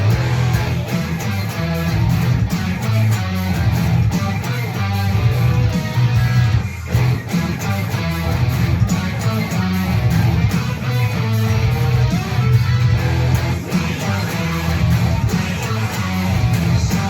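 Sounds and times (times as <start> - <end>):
strong bass line: 0.0 - 17.0
strummed guitar: 0.0 - 17.0.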